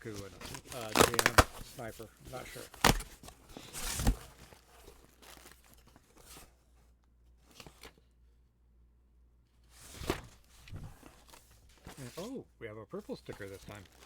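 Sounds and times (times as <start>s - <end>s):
packaging tearing and crinkling: 0.2s - 1.9s, 2.6s - 5.8s.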